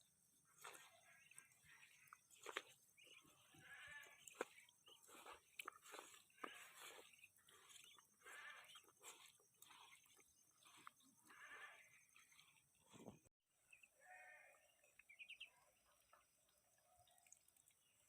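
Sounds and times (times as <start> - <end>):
ducks quacking faintly: 0.5 - 13.1.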